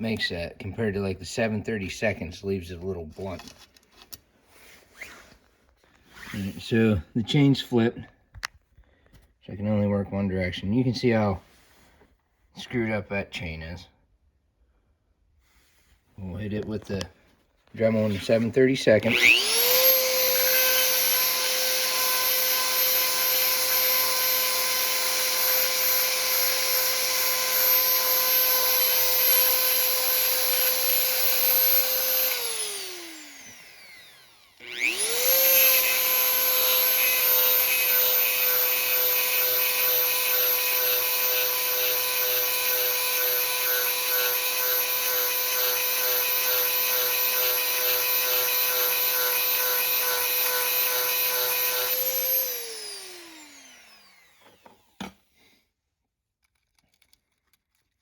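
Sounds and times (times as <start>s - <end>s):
rotary tool whining: 17.9s - 55.4s.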